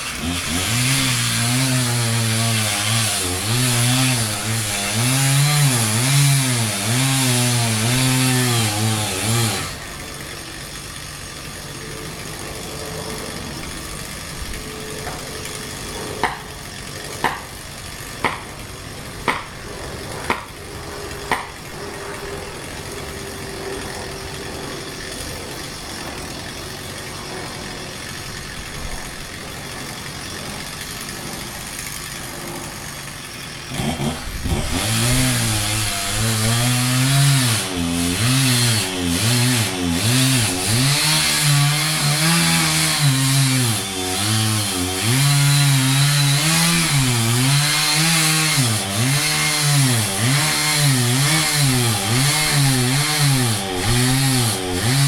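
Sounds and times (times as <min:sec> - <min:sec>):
chainsaw engine revving: 0:00.0 - 0:55.0
sharp knocks: 0:17.2 - 0:17.5.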